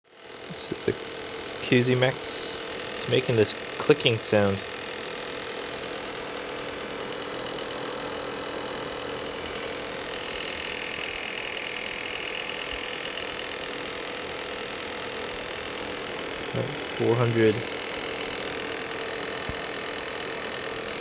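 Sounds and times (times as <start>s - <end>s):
machine fan humming: 0.0s - 21.0s
high whine: 0.4s - 21.0s.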